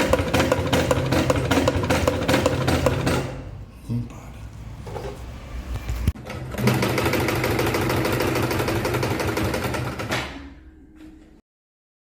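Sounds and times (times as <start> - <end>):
industrial sewing machine stitching: 0.0 - 3.5, 6.2 - 10.4.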